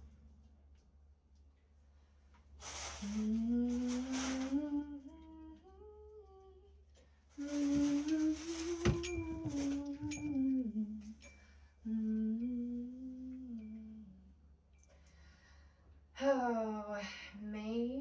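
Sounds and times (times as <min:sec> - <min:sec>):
woman humming melody: 0:03.1 - 0:06.8, 0:07.4 - 0:14.4.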